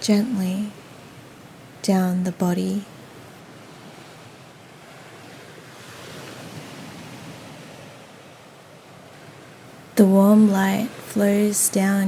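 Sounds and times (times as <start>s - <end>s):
ocean waves washing on shore: 0.0s - 12.0s.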